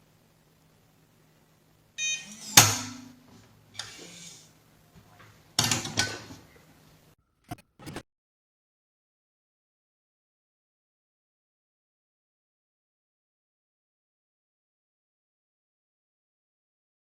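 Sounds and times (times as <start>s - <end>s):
short electronic beep: 2.0s - 3.0s, 7.5s - 8.0s.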